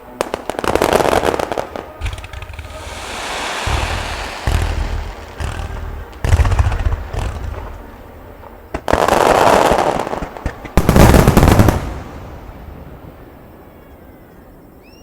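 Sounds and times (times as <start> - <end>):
fireworks crackling: 0.0 - 12.8
fireworks shells bursting: 0.3 - 11.9
sharp booms: 1.9 - 9.2.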